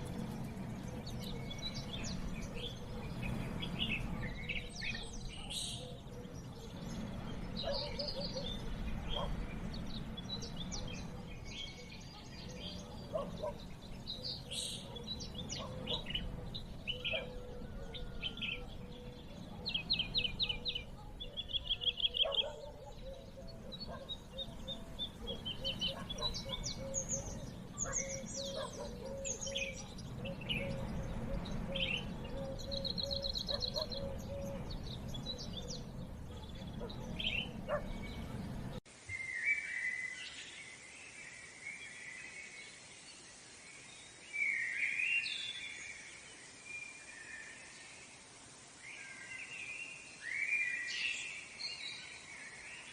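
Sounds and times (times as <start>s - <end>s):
birds chirping and trilling: 0.0s - 52.9s
steady low hum: 23.2s - 38.8s.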